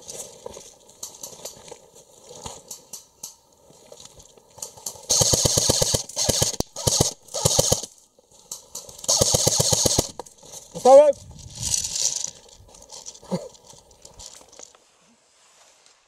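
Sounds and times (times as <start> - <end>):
airsoft rifle firing bursts: 5.1 - 7.9, 9.1 - 10.2.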